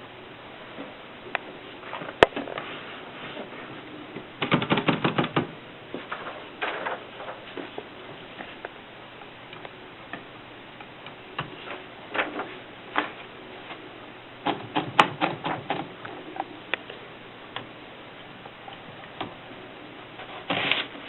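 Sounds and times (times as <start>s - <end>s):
typewriter keys clicking: 4.4s - 5.5s.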